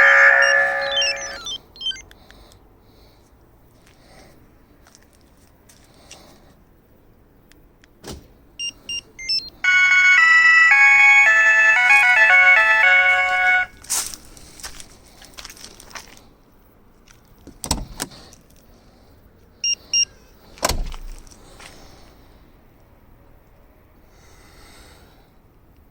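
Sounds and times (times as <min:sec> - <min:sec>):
electronic alarm tune: 0:00.0 - 0:02.0, 0:08.6 - 0:13.7
short electronic beeps: 0:00.0 - 0:02.1, 0:08.6 - 0:10.4, 0:19.6 - 0:20.1.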